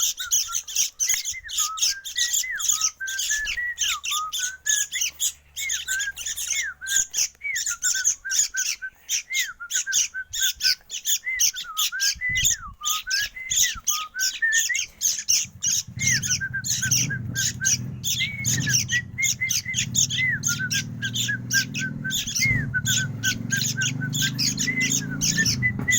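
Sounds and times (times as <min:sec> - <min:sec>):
chattering bird chirps: 0:00.0 - 0:25.9
steady low hum: 0:15.4 - 0:25.9
whistled gliding notes: 0:15.8 - 0:25.9.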